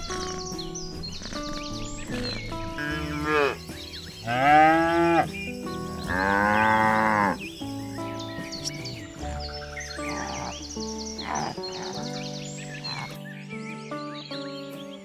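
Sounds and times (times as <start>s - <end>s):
background music: 0.0s - 15.0s
cow mooing: 2.8s - 3.6s, 4.2s - 5.3s, 6.1s - 7.4s, 10.0s - 10.6s.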